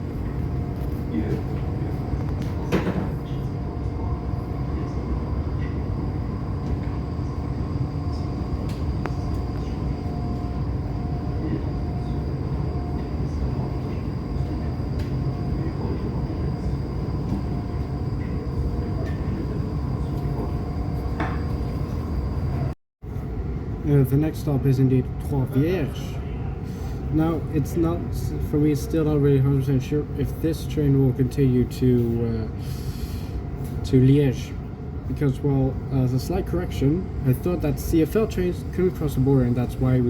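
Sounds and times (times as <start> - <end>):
train rumble inside carriage: 0.0 - 22.7
faint constant hum: 0.0 - 40.0.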